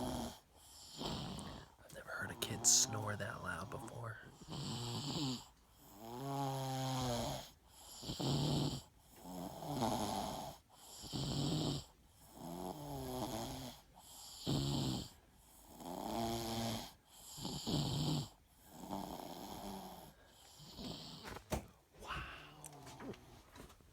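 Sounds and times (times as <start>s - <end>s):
person snoring: 0.0s - 5.4s.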